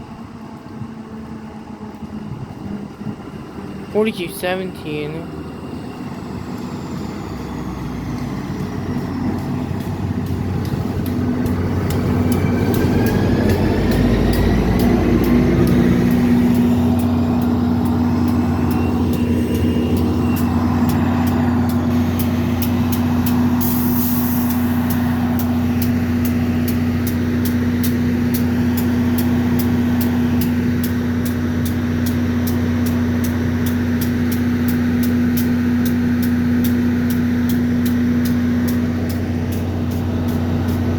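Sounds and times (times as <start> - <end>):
locomotive humming: 0.0 - 40.9
train wheels clicking: 7.9 - 40.9
air hiss: 23.5 - 25.5.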